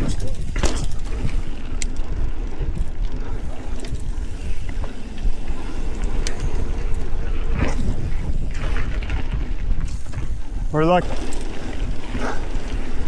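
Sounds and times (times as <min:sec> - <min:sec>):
wind buffeting microphone: 0:00.0 - 0:13.0
heavy breath: 0:12.0 - 0:13.0.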